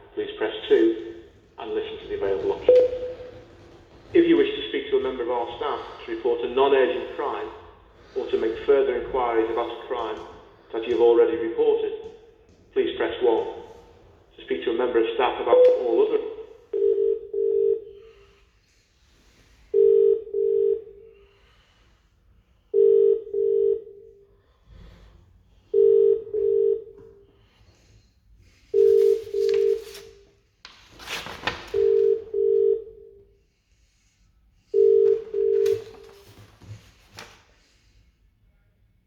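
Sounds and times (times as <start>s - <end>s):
telephone ringing tone: 0.7s - 4.3s, 16.7s - 18.0s, 19.8s - 21.1s, 22.8s - 24.0s, 25.8s - 27.0s, 28.8s - 29.9s, 31.8s - 33.2s, 34.8s - 36.1s
rustling noise: 0.7s - 10.7s, 28.8s - 32.1s, 35.1s - 37.6s.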